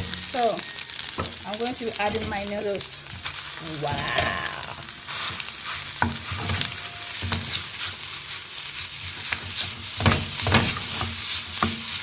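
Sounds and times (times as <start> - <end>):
food sizzling in oil: 0.0 - 12.0
utensil scraping a pan: 3.2 - 12.0.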